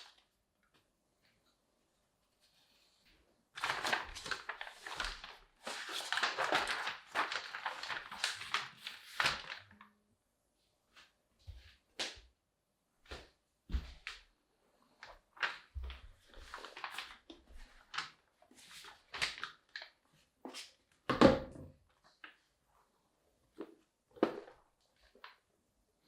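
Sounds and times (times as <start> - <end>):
packaging crinkling and rustling: 3.6 - 9.8, 15.0 - 20.0.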